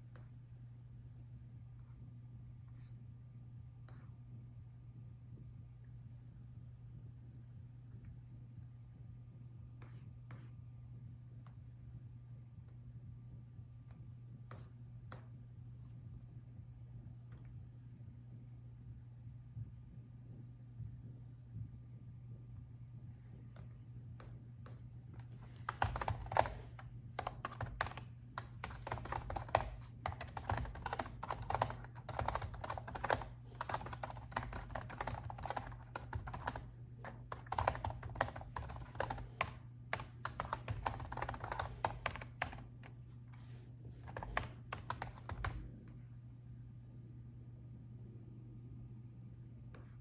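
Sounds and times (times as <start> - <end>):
steady low hum: 0.0 - 50.0
typing on laptop keyboard: 25.3 - 45.7.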